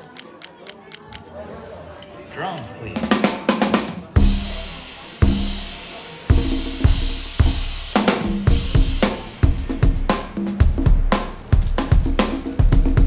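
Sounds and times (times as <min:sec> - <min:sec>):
cymbals and hi-hat: 0:03.0 - 0:13.0
snare drum: 0:03.0 - 0:13.0
kick drum: 0:06.4 - 0:13.0.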